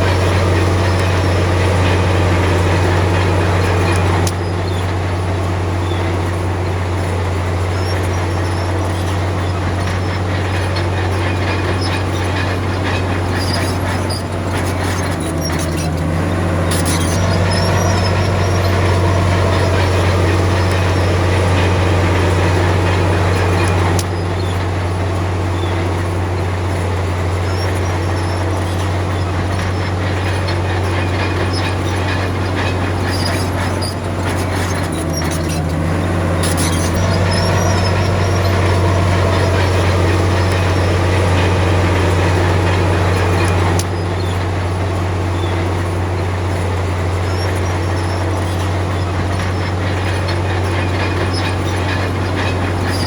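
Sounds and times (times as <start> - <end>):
heavy diesel engine running: 0.0 - 53.0
sharp metallic clanks: 27.5 - 44.5.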